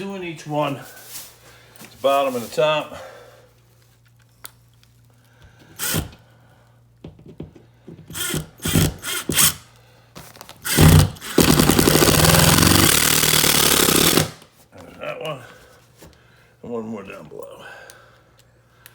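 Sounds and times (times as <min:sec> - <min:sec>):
power drill driving screws: 0:05.8 - 0:06.2, 0:08.1 - 0:09.6, 0:10.6 - 0:14.4.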